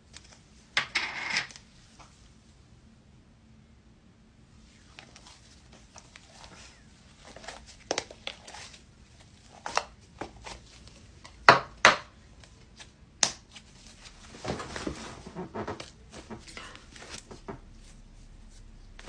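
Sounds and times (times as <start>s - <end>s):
rustling: 4.6s - 11.4s, 12.3s - 19.0s.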